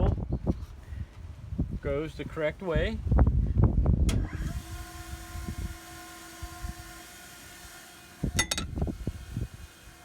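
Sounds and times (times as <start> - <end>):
grinder motor humming: 4.3 - 10.0.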